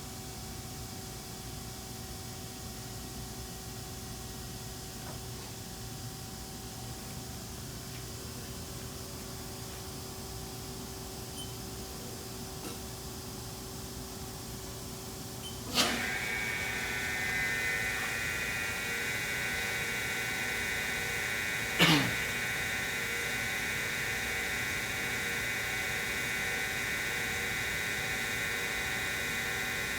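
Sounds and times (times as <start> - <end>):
machine hum: 15.8 - 29.9
high multi-tone whine: 15.9 - 29.9.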